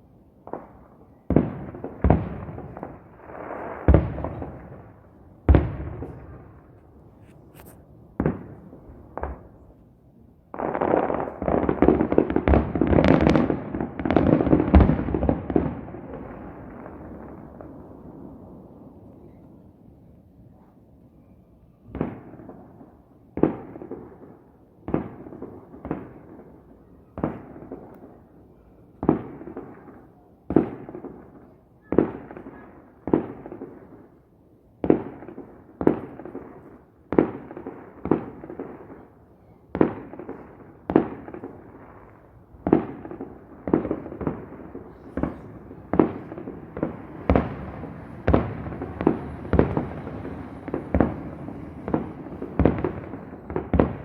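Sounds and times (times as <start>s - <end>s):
firework shells booming: 42.6s - 54.0s.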